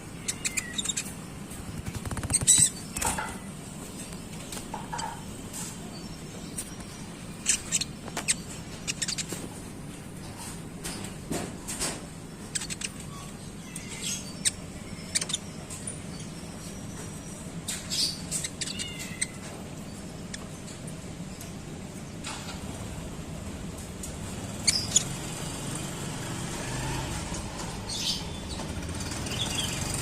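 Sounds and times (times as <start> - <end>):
songbird squeaky high chirps: 0.0 - 1.5, 5.8 - 9.4, 12.4 - 20.8, 24.5 - 25.2
curved chirping calls: 0.0 - 3.2, 4.0 - 9.5, 12.4 - 20.8, 24.4 - 25.8.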